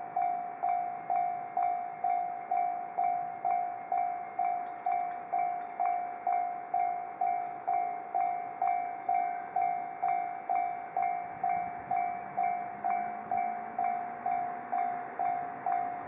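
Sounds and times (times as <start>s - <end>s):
level-crossing warning bell: 0.0s - 16.0s.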